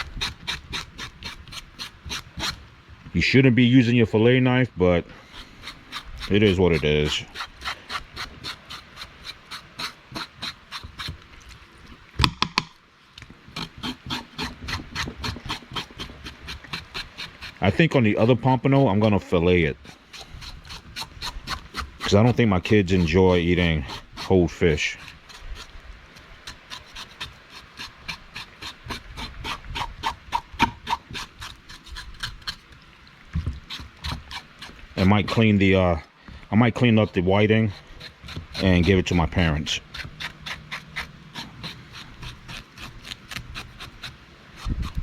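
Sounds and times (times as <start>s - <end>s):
knife scraping fish scales: 0.0s - 2.6s, 5.2s - 11.3s, 13.6s - 18.4s, 19.8s - 32.8s, 33.6s - 35.5s, 37.0s - 45.0s
sharp knocks: 12.2s - 12.8s.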